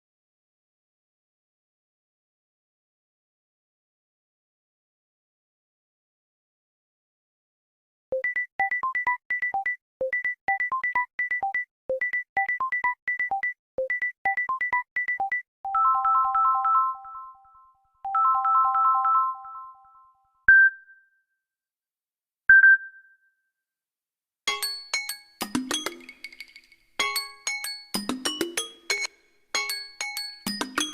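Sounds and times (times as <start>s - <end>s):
phone ringtone synth beeps: 8.2s - 21.0s.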